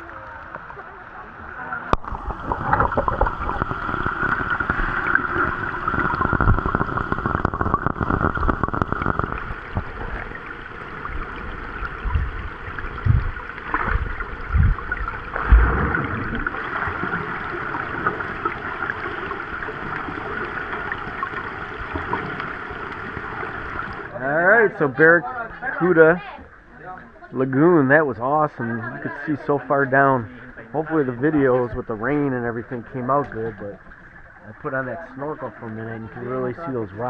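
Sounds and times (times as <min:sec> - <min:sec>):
rain falling on lake water: 0:02.0 - 0:24.2
water sloshing: 0:02.0 - 0:24.2
heavy splashing thumps: 0:12.0 - 0:16.5.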